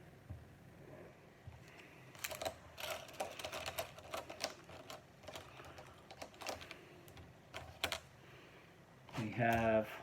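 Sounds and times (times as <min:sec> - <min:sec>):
plastic pieces clicking and clattering: 0:02.1 - 0:08.1.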